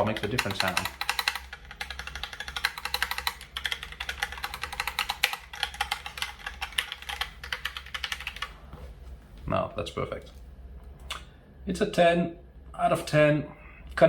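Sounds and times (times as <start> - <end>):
mechanical keyboard typing: 0.0 - 8.5.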